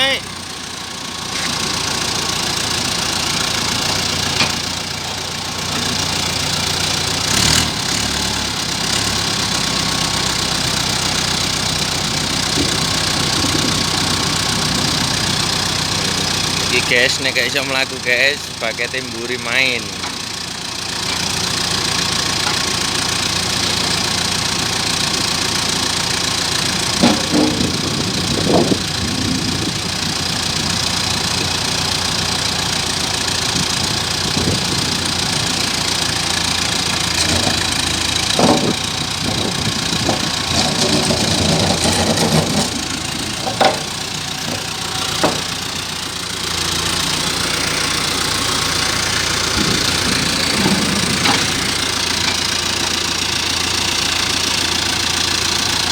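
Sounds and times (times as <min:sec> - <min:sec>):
large engine idling: 0:00.0 - 0:55.9
sharp metal clanks and knocks: 0:27.0 - 0:27.8, 0:37.1 - 0:45.8.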